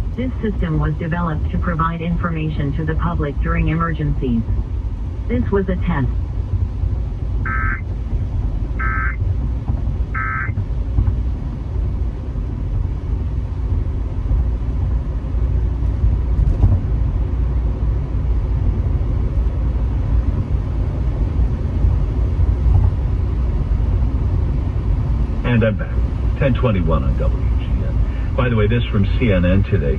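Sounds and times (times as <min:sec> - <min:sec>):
steady low rumble: 0:00.0 - 0:29.9
buzzy warbling data bursts: 0:07.5 - 0:07.8, 0:08.8 - 0:09.2, 0:10.2 - 0:10.5.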